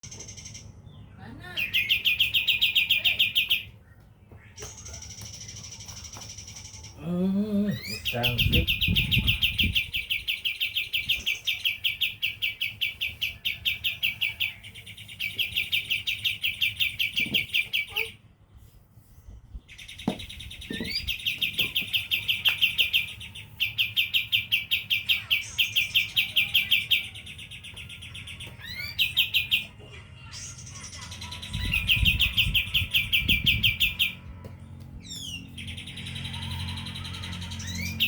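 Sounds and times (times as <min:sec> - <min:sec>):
songbird singing rapid notes: 0:00.0 - 0:18.1, 0:31.2 - 0:34.2.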